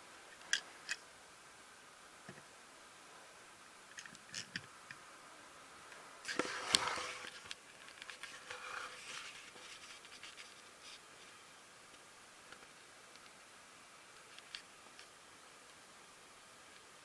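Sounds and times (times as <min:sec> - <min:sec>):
soft rustling: 0:06.3 - 0:11.5.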